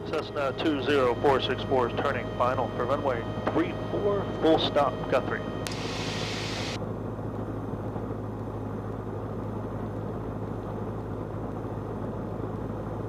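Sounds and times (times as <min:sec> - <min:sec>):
airplane engine and propeller drone: 0:00.0 - 0:13.0
radio static hiss: 0:05.6 - 0:06.8.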